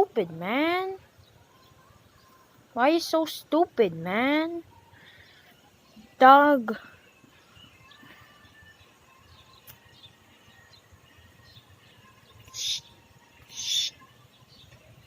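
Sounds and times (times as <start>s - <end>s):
faint high chirps: 12.2s - 14.8s
bird raspy hissing calls: 12.5s - 14.0s.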